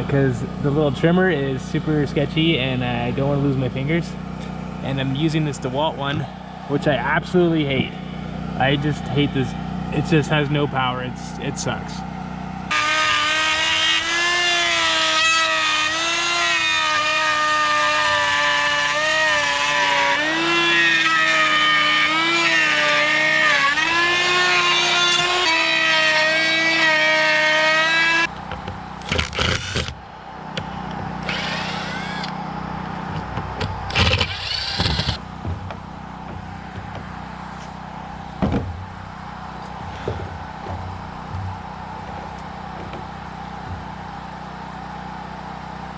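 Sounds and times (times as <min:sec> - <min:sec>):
electric router cutting wood: 0:12.7 - 0:28.3, 0:29.0 - 0:30.0, 0:31.2 - 0:32.3, 0:33.9 - 0:35.2.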